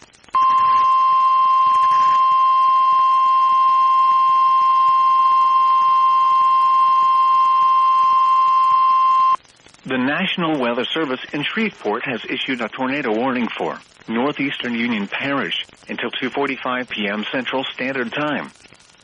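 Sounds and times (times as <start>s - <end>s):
steady alarm tone: 0.4s - 9.4s.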